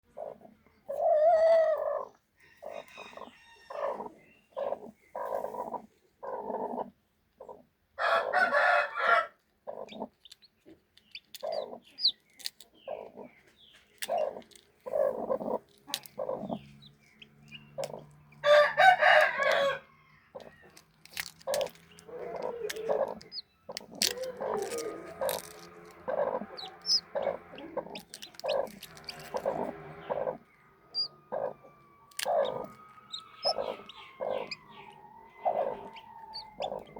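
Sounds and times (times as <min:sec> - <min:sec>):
chickens clucking: 0:00.1 - 0:36.9
rooster crowing: 0:02.5 - 0:04.0, 0:08.0 - 0:09.4, 0:18.4 - 0:20.7, 0:24.0 - 0:25.5, 0:29.1 - 0:36.9.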